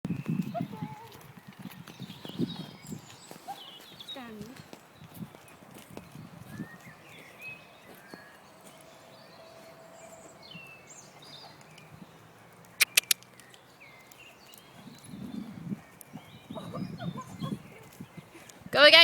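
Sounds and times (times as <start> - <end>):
small birds chirping: 0.1 - 19.0
sharp clicks: 12.6 - 14.6.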